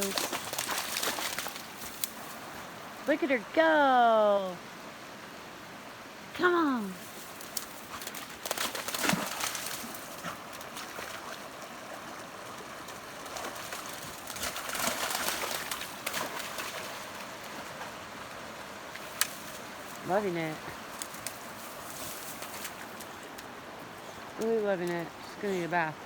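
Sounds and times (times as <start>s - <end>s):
puppy splashing through water: 0.0s - 2.2s, 7.3s - 17.9s
flowing creek water: 0.0s - 26.0s.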